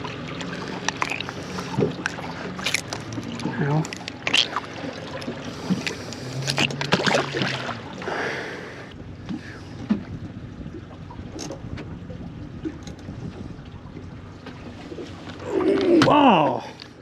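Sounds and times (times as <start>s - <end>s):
steady wind: 0.0s - 17.0s
fishing tackle clicking and knocking: 0.7s - 4.5s.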